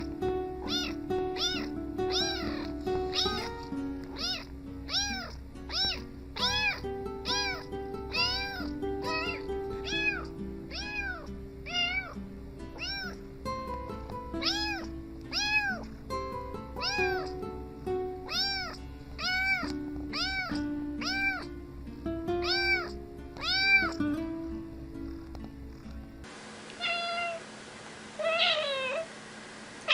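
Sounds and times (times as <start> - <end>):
cat meowing: 0.0 - 12.2, 12.8 - 13.2, 14.4 - 15.9, 16.8 - 17.4, 18.3 - 21.6, 22.4 - 24.0, 26.8 - 27.4, 28.2 - 29.1.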